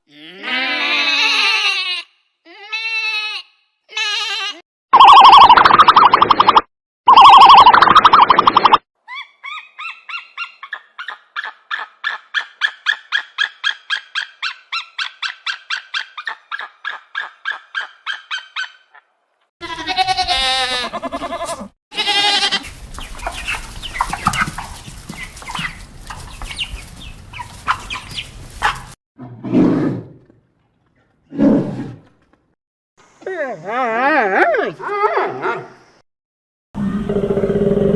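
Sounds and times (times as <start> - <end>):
warbling animal call: 5.0 - 8.8
rustling with clicks: 22.7 - 29.0.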